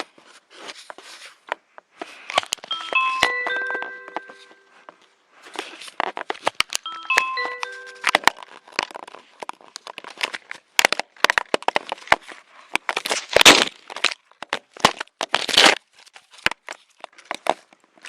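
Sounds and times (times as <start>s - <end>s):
electronic chime: 2.7s - 4.9s, 6.9s - 8.6s.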